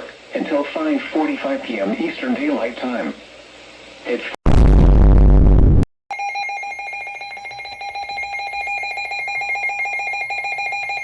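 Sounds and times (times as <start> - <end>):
pulsing electronic alarm: 6.1 - 11.0.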